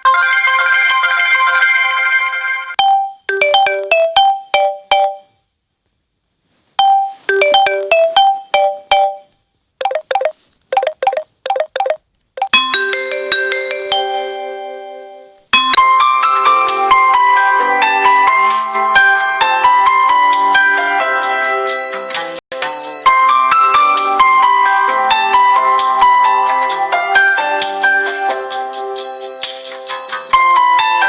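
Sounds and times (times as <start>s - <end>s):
phone ringtone melody: 0.0s - 5.4s, 6.8s - 15.8s.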